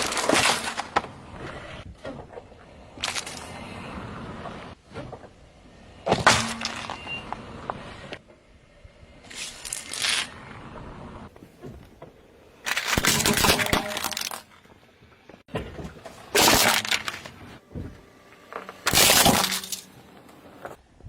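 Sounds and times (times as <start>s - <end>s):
glass crushed under car tyre: 12.7s - 14.5s, 16.3s - 17.4s, 18.8s - 20.0s.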